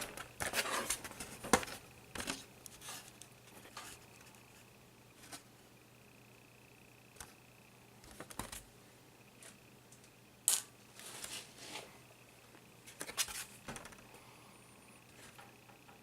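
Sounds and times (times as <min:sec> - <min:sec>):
laptop parts clicking: 0:08.0 - 0:08.6.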